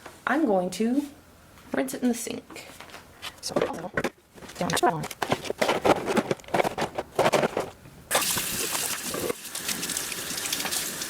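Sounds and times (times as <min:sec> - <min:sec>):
tap water running into sink: 0:08.1 - 0:11.0.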